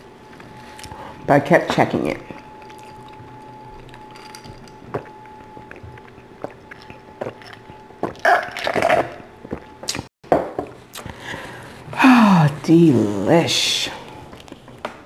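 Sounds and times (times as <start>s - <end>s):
chewing bread: 2.2s - 10.1s, 14.1s - 14.8s
crunchy chewing: 2.3s - 10.1s, 14.0s - 14.8s
wet mouth clicks: 4.9s - 10.1s.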